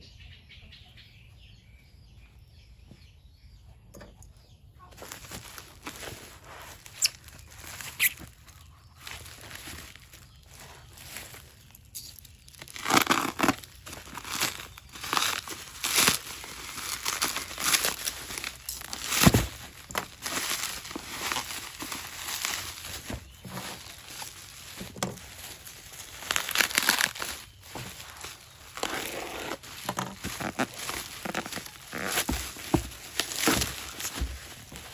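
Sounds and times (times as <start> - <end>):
cardboard rustling: 4.9 - 11.7, 12.4 - 34.9
cardboard snapping: 16.9 - 25.2, 26.1 - 34.9.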